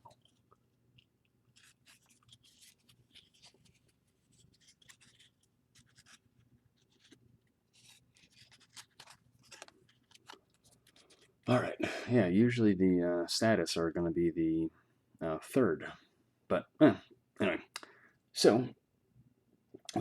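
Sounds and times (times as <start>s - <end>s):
trading cards being shuffled: 1.5s - 11.3s.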